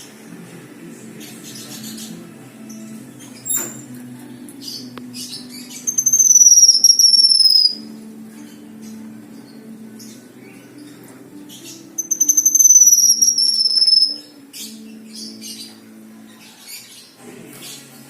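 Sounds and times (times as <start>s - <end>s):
songbird chirping: 0.0s - 18.0s
high bird whistle: 5.9s - 7.8s, 12.0s - 14.4s.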